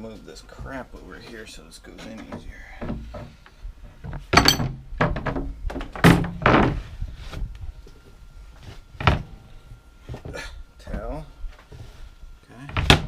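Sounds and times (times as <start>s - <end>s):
objects thunking on workbench: 4.0s - 6.9s, 9.0s - 9.3s.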